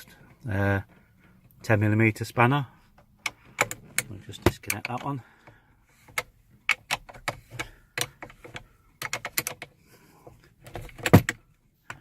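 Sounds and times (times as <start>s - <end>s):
spanner metallic clicks and taps: 3.0s - 9.7s.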